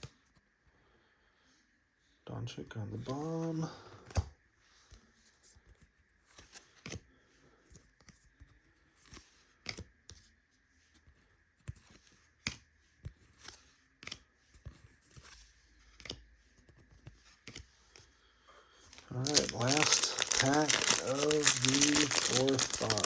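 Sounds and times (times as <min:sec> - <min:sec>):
cards clicking and flicking: 0:19.0 - 0:23.0.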